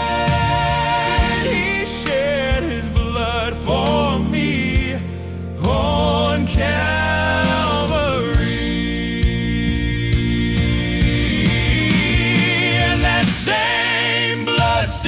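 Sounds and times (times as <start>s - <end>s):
drum hits: 0.0s - 3.4s, 5.7s - 13.8s
bass line: 0.0s - 15.0s
voices singing in harmony: 0.0s - 15.0s.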